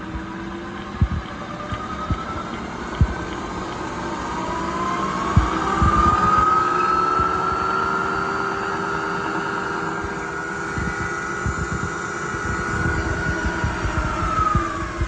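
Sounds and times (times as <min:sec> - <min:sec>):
milling machine motor whine: 0:00.0 - 0:15.0
low thumps: 0:01.0 - 0:01.2, 0:05.4 - 0:06.4, 0:10.0 - 0:15.0.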